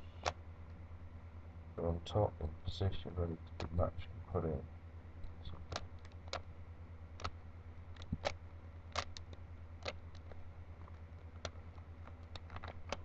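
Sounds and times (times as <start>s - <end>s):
steady low hum: 0.0s - 13.0s
plastic puzzle cube clicking: 9.0s - 10.4s, 11.4s - 13.0s.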